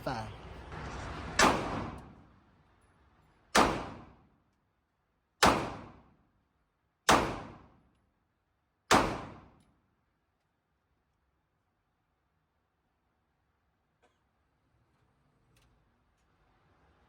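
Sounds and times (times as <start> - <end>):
pistol shots: 1.4 - 2.1, 3.6 - 4.2, 5.4 - 6.1, 7.1 - 7.7, 8.9 - 9.5.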